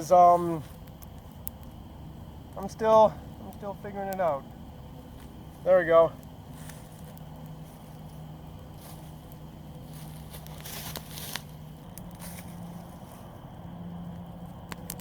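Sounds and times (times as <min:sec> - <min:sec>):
campfire crackling and popping: 0:00.0 - 0:15.0
fire hissing flare-ups: 0:00.0 - 0:15.0
steady low hum: 0:00.0 - 0:15.0.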